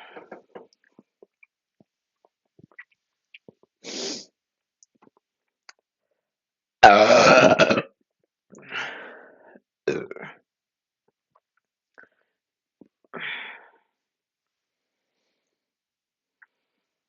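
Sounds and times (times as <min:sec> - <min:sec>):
person burping loudly: 0:06.8 - 0:08.0, 0:09.9 - 0:10.4.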